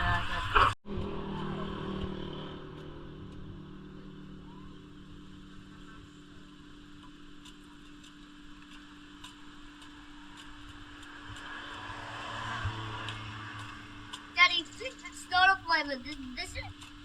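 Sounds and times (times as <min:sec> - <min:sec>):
faint sharp ticks: 0:07.0 - 0:15.1.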